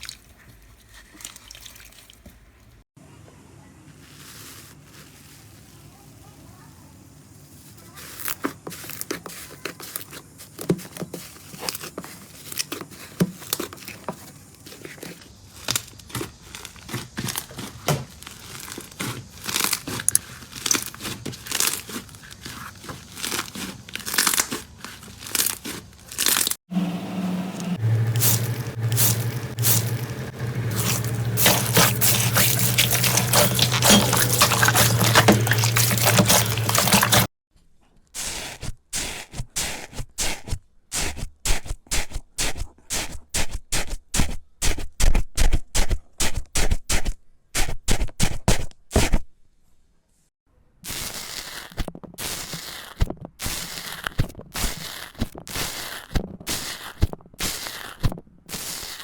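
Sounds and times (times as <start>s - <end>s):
crunchy slime crackling: 11.4s - 26.6s, 28.2s - 37.3s, 50.9s - 59.0s
steady low hum: 27.6s - 37.3s.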